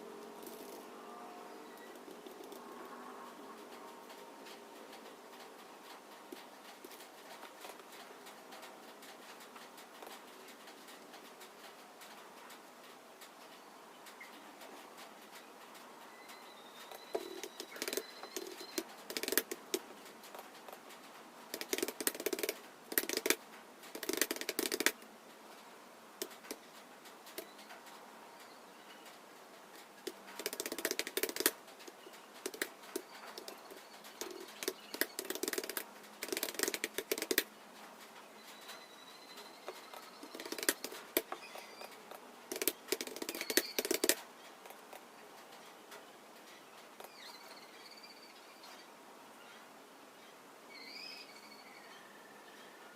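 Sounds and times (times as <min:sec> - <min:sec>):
computer keyboard typing: 0:16.9 - 0:20.5, 0:21.5 - 0:25.0, 0:30.0 - 0:37.5, 0:39.7 - 0:44.8.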